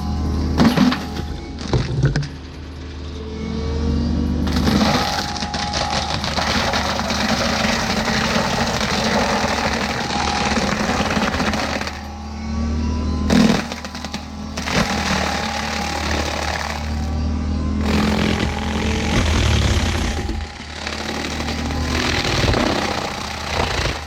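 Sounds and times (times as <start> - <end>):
diesel engine hum: 0.0 - 24.0
loud wood crack: 4.4 - 12.1, 13.3 - 17.2, 17.8 - 24.0
mulcher crackling through wood: 4.4 - 12.1, 13.3 - 17.2, 17.8 - 24.0.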